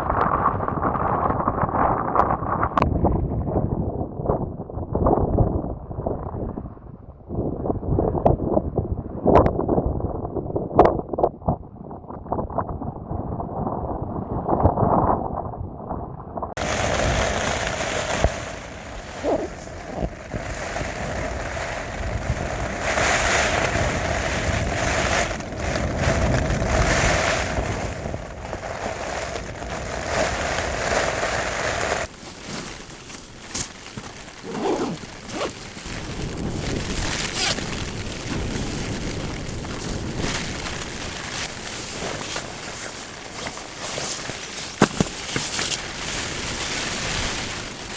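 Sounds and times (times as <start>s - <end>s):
wind noise on microphone: 0.0s - 47.9s
storm wind gusting: 31.4s - 44.8s.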